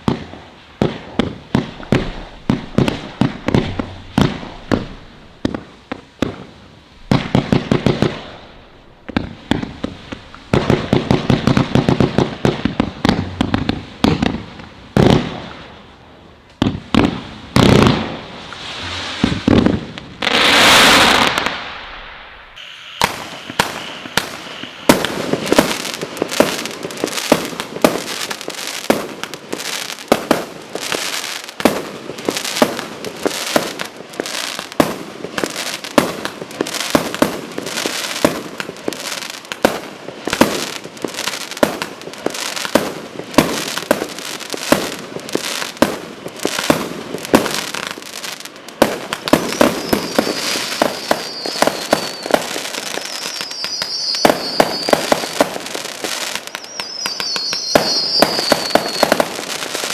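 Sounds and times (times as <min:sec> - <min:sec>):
rapid firework bangs: 0:00.0 - 0:15.6, 0:16.6 - 0:22.0, 0:23.0 - 0:59.9
high wavering whistle: 0:22.6 - 0:24.9, 0:49.5 - 0:55.3, 0:56.4 - 0:59.4.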